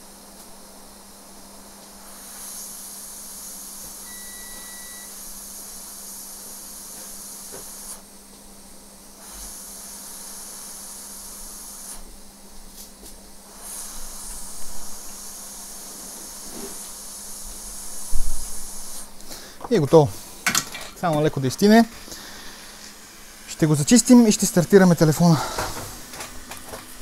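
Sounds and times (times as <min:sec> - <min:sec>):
hot air station hissing: 0:01.9 - 0:08.1, 0:09.1 - 0:12.1, 0:13.4 - 0:27.0
electronic beep: 0:04.1 - 0:05.1.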